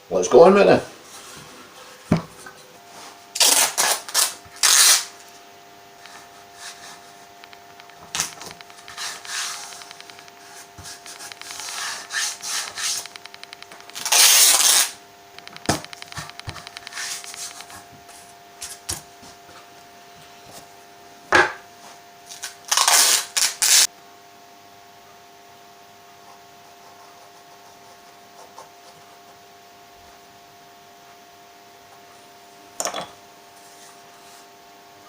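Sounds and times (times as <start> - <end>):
wood and tools rubbing: 6.1 - 7.4, 8.2 - 14.8, 16.0 - 18.8.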